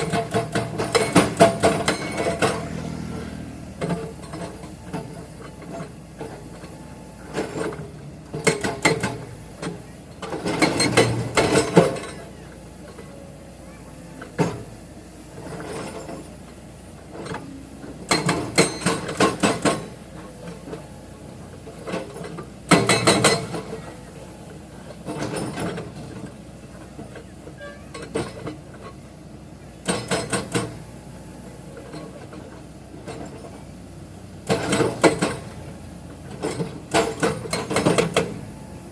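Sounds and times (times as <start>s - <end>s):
hydraulic breaker hammering rock: 0.0s - 3.1s, 21.8s - 26.2s, 34.4s - 38.9s
low engine hum: 0.0s - 22.8s.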